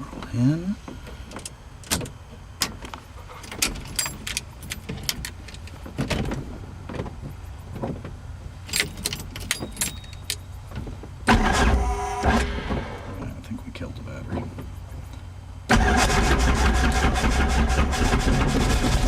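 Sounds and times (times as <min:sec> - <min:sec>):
steady low rumble: 0:00.0 - 0:15.7.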